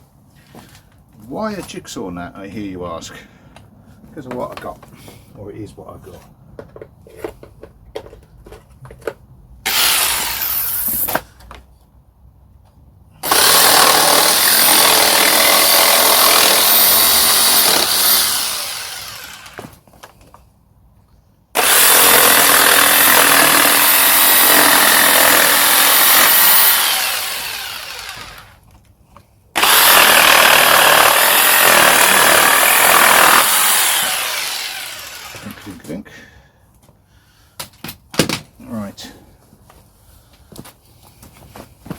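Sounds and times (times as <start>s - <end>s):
jigsaw cutting wood: 9.7s - 11.1s, 13.2s - 19.7s, 21.6s - 28.6s, 29.6s - 35.8s.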